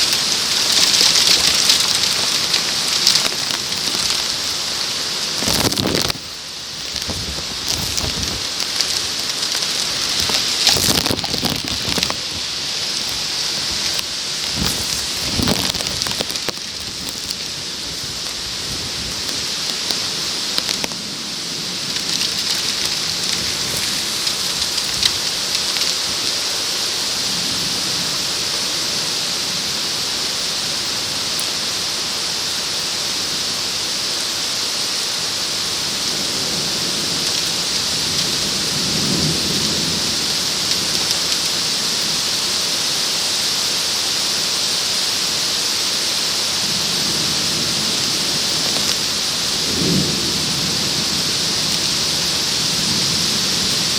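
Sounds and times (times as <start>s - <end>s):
heavy wind-driven rain hiss: 0.0s - 53.9s
low rumbles: 5.3s - 19.3s
drops ticking on plastic sheet: 5.4s - 17.5s, 19.1s - 21.0s.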